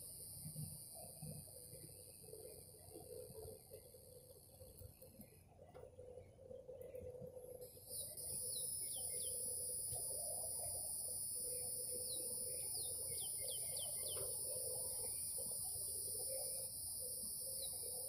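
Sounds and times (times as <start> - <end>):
faint steady hum: 0.0 - 18.0
high-pitched insect trill: 7.6 - 18.0.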